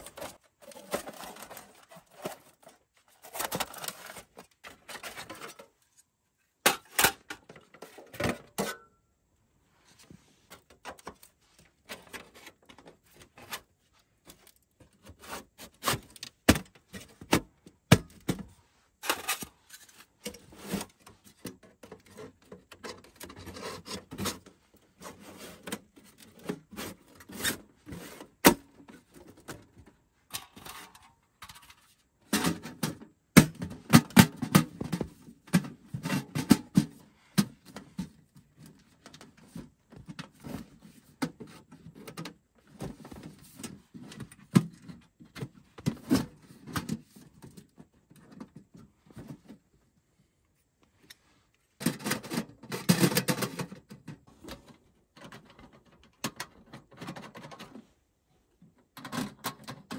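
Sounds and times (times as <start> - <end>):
objects being handled: 0.0 - 8.9, 9.8 - 49.7.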